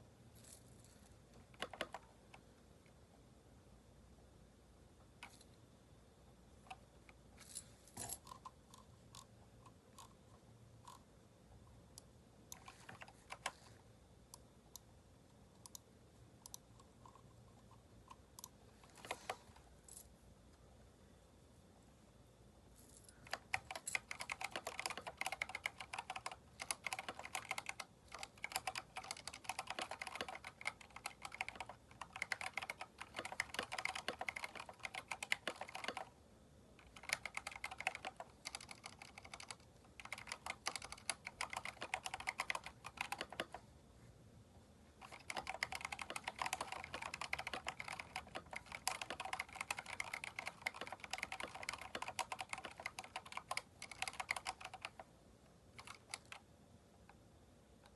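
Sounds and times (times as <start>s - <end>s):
fast typing on mechanical keyboard: 1.5s - 2.1s, 12.6s - 13.6s, 18.9s - 19.4s, 23.2s - 36.1s, 36.8s - 43.6s, 45.0s - 55.1s, 55.8s - 56.4s.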